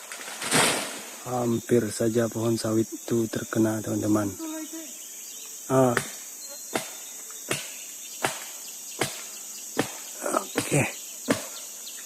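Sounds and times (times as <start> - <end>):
forest insects chirring: 0.0 - 12.0
blade chopping into wood: 6.0 - 9.2, 9.8 - 10.0.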